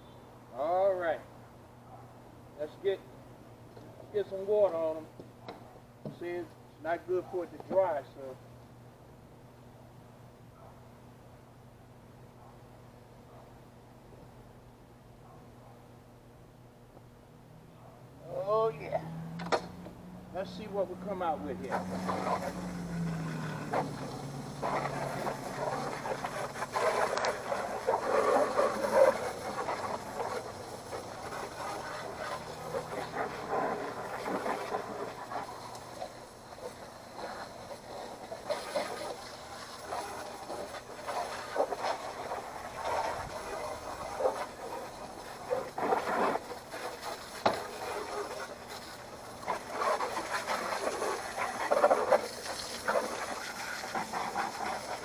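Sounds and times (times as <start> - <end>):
water spraying onto mower: 19.2 - 55.0.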